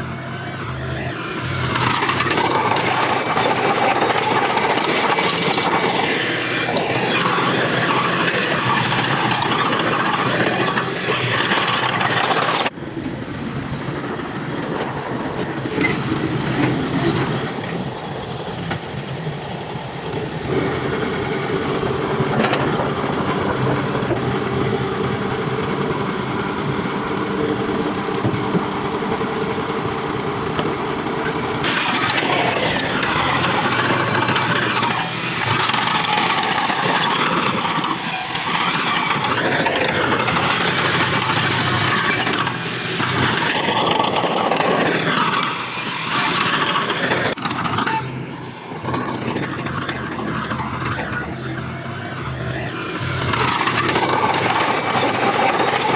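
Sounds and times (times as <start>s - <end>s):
diesel engine of earthmoving machinery: 0.0s - 55.9s.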